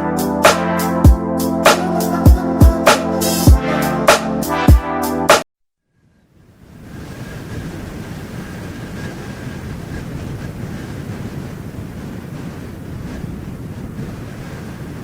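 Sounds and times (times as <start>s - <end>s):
wind buffeting microphone: 6.6s - 15.0s.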